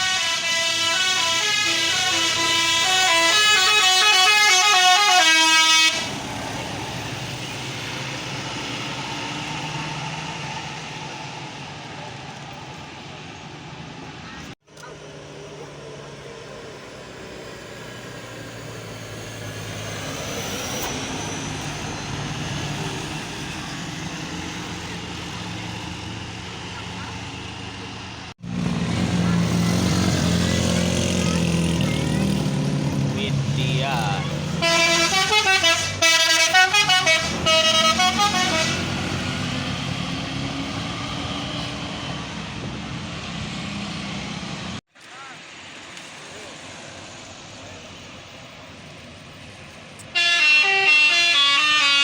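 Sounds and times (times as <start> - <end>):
musical bus air horn: 0.0 - 6.2, 34.5 - 39.2, 50.1 - 52.0
bus driving past: 0.0 - 52.0.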